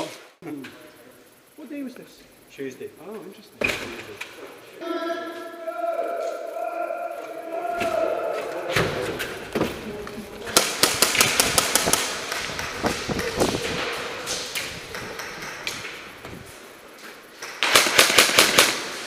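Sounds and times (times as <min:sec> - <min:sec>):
airsoft rifle bursts: 0:10.5 - 0:12.3, 0:17.4 - 0:19.0.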